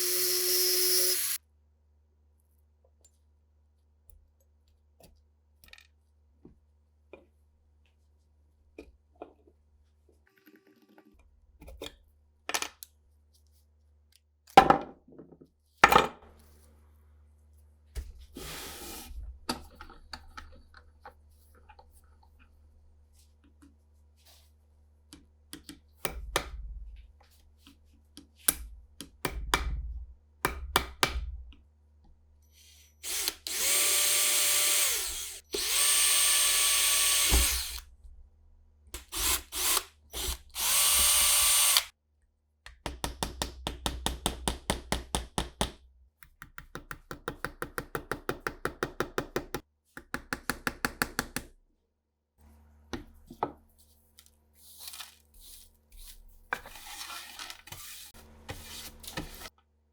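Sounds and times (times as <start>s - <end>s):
small power tool running: 0.0s - 1.4s, 33.0s - 37.8s, 39.0s - 41.9s.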